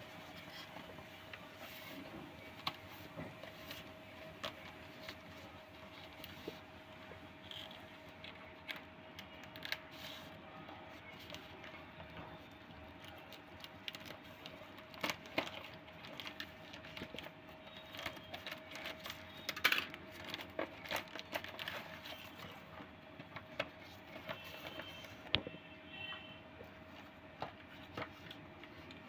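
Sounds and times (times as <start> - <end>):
clicks taps and rustles of packaging: 11.1 - 29.0.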